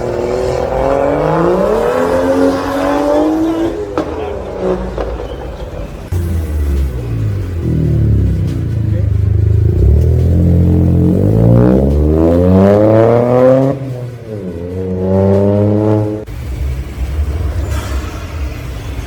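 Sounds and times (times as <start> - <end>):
car engine revving hard: 0.0 - 5.0.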